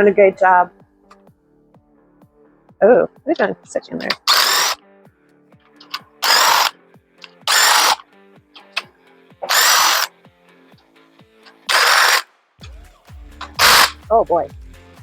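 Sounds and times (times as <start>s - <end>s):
power tool bursts: 4.0s - 4.8s, 6.2s - 8.0s, 9.5s - 10.1s, 11.5s - 12.3s, 13.6s - 14.0s.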